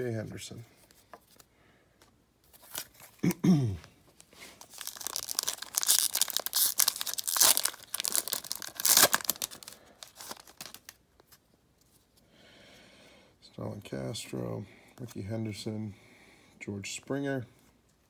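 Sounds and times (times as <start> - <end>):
foil wrapper tearing and crinkling: 4.4 - 11.0.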